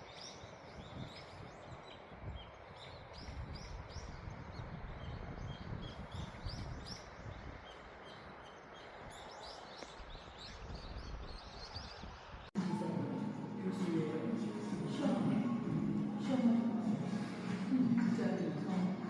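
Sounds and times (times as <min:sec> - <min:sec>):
small birds chirping: 0:00.0 - 0:12.5.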